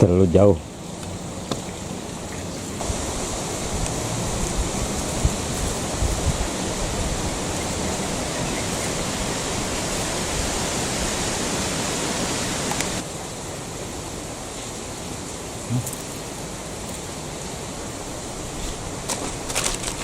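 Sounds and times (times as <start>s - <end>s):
flowing water rushing: 0.0s - 20.0s.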